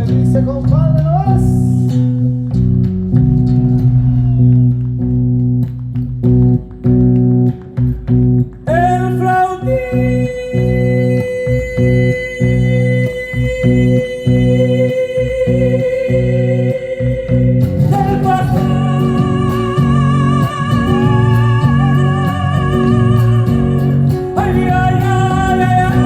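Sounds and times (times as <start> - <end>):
person singing with vibrato: 9.2 - 26.0.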